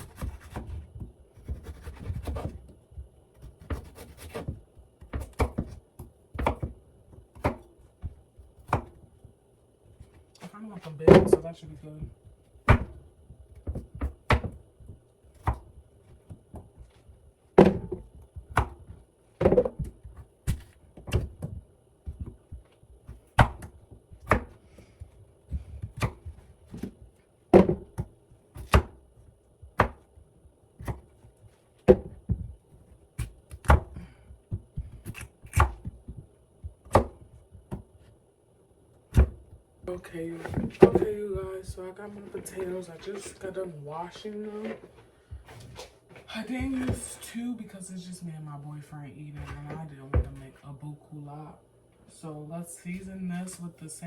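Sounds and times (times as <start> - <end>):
knife chopping on cutting board: 0.0 - 2.7, 3.4 - 7.7, 8.6 - 9.0, 12.6 - 13.0, 13.6 - 14.6, 17.6 - 22.4, 23.1 - 24.6, 25.8 - 26.9, 27.6 - 29.0, 29.8 - 30.1, 30.8 - 31.1, 34.5 - 36.2, 36.8 - 37.8.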